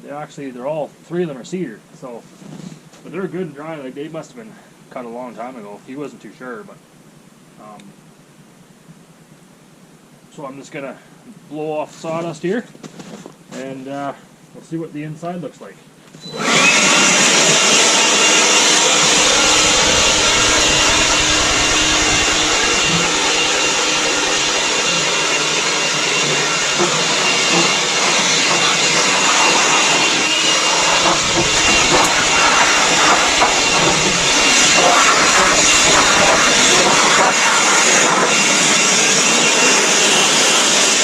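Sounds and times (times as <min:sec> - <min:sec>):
blower motor whine: 0:16.2 - 0:41.0
battery blower rushing air: 0:16.3 - 0:41.0.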